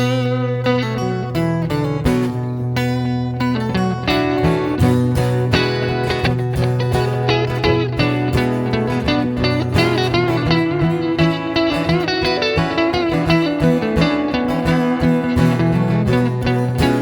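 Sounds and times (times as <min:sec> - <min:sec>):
lead guitar with bending notes: 0:00.0 - 0:17.0.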